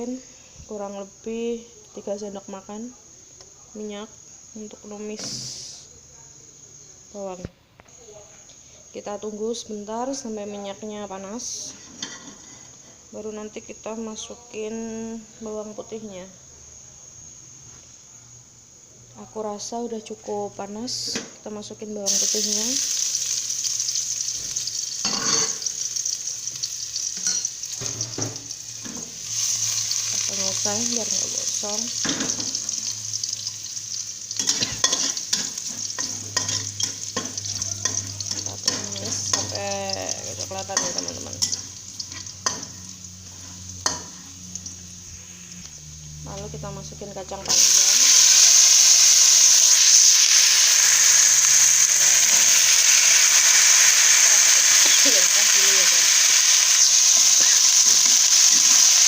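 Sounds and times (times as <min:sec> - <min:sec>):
garlic sizzling in hot oil: 0:03.8 - 0:05.8, 0:19.6 - 0:59.0.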